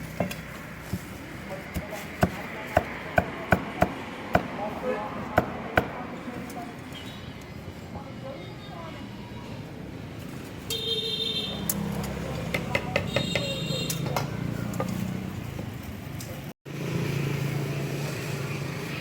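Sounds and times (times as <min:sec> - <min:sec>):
vehicles passing: 0:00.0 - 0:19.0
engine hum: 0:14.1 - 0:19.0.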